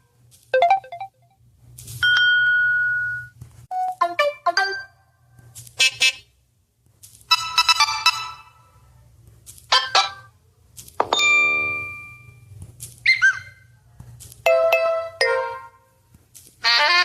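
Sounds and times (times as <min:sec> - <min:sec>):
phone notification sounds: 0:11.0 - 0:12.3.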